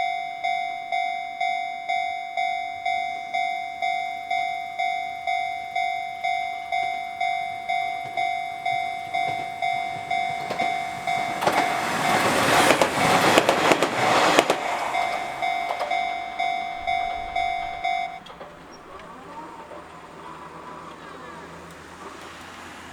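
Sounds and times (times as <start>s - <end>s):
level crossing alarm dinging: 0.0s - 22.4s
train wheels clattering over rail joints: 7.2s - 22.9s.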